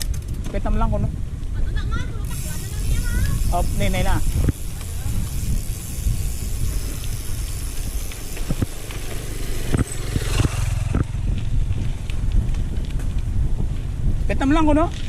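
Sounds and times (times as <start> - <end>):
bike knocks and clicks: 0.0 - 0.7, 2.3 - 13.3
mountain bike rumble: 0.0 - 15.0.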